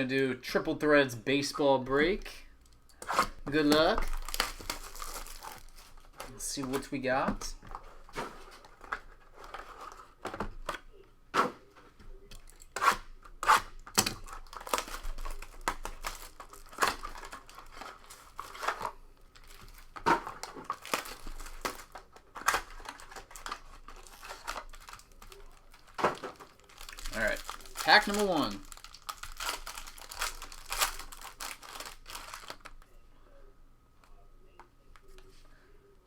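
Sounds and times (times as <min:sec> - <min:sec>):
plastic wrapping tearing and crinkling: 0:03.1 - 0:06.9, 0:12.5 - 0:32.8.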